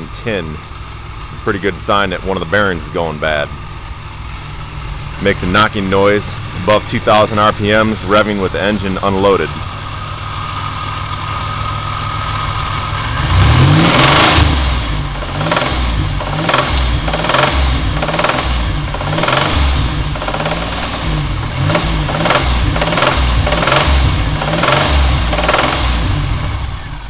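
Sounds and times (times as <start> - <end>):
car engine idling and revving: 0.0 - 27.0
engine knocking: 15.2 - 26.8.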